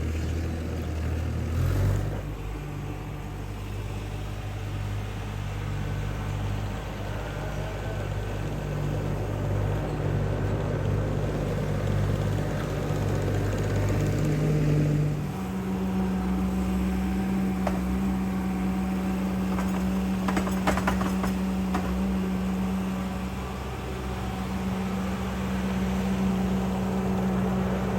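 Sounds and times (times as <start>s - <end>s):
skid steer engine running: 0.0s - 27.9s
metallic clanks: 17.5s - 18.2s, 19.4s - 22.3s.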